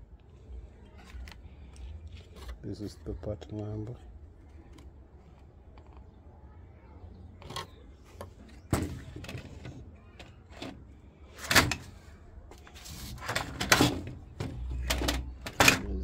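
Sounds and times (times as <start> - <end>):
plastic parts knocking and scraping: 7.4 - 16.0.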